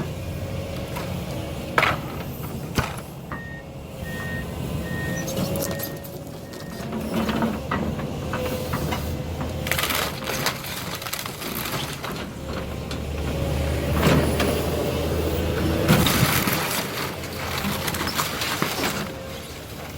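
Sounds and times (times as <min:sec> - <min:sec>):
demolition machine running: 0:00.0 - 0:19.9
wood frame crunching and cracking: 0:09.6 - 0:12.1.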